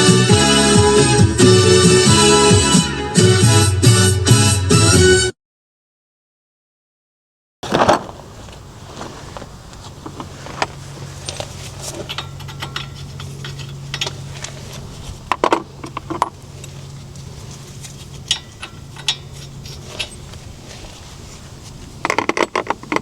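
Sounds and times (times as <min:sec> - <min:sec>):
steady low hum: 0:08.0 - 0:23.0
metal tools clinking and scraping: 0:09.7 - 0:23.0.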